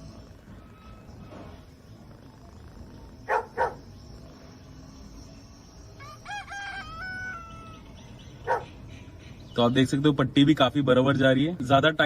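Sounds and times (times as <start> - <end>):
dog barking: 3.3 - 3.8, 8.4 - 8.8.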